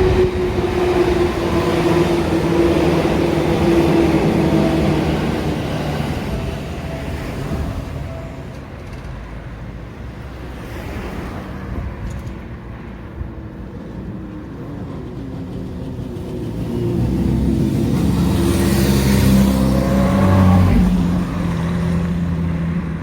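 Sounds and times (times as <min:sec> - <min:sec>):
road traffic: 0:00.0 - 0:23.0
vehicle engine passing: 0:16.4 - 0:23.0.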